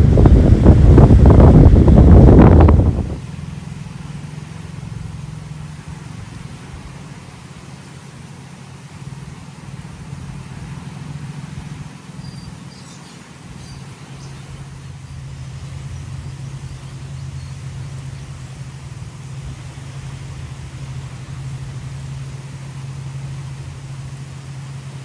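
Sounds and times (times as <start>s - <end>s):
low mechanical hum: 0.0s - 25.0s
faint high chirps: 12.2s - 15.3s.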